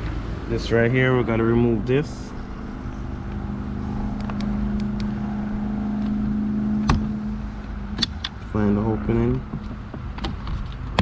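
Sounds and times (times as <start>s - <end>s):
motor hum: 0.0s - 10.5s
sharp clicks: 4.1s - 5.2s.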